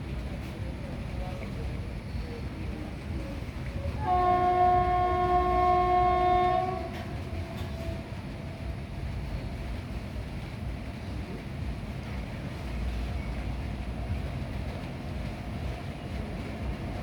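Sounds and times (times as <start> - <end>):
train rumble: 0.0 - 17.0
locomotive horn blast: 3.9 - 8.3.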